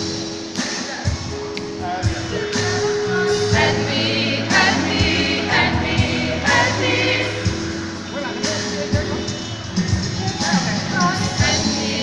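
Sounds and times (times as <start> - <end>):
bass line: 1.8 - 12.0
gospel choir singing: 2.2 - 8.7, 10.4 - 12.0.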